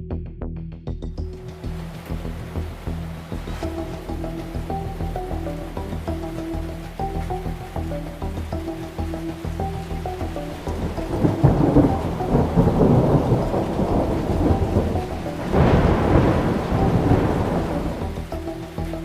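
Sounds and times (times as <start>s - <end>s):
faint background music: 0.0s - 19.0s
heavy rain: 1.3s - 19.0s
thunder rumbling: 10.4s - 19.0s
loud thunder clap: 11.1s - 18.0s.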